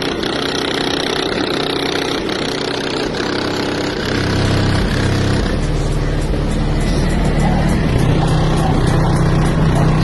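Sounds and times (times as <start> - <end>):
bass-heavy music from subwoofers: 3.2 - 10.0.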